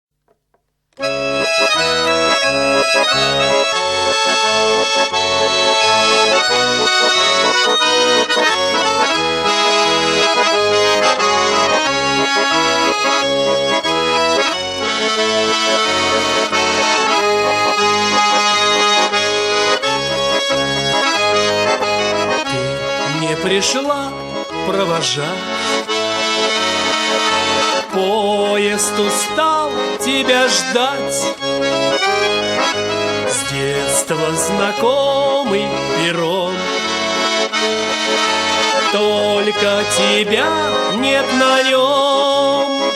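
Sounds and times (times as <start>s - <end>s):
sustained instrumental melody: 0.3s - 42.9s.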